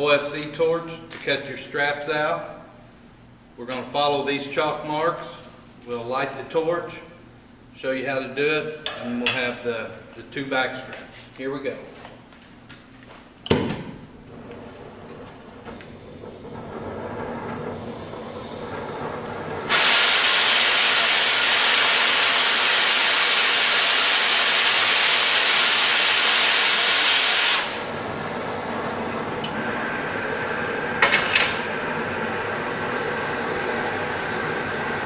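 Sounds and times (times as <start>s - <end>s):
cutting torch gas hissing: 15.5s - 35.0s.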